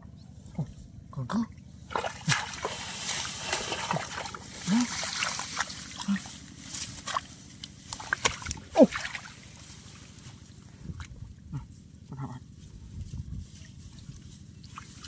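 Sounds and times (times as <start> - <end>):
splashing in shallow muddy water: 1.4 - 11.6, 13.4 - 15.0.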